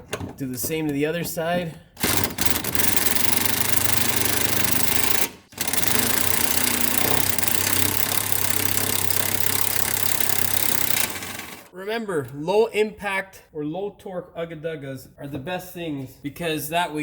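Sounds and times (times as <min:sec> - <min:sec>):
impact wrench hammering: 0:02.0 - 0:11.7.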